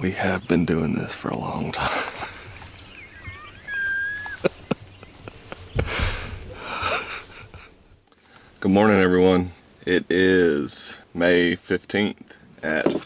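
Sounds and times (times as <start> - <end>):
songbirds whistling: 1.9 - 6.6.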